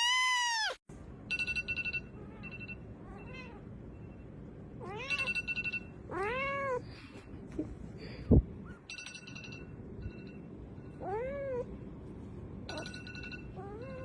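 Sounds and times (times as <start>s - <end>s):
cat meowing: 0.0s - 0.8s, 6.1s - 6.8s.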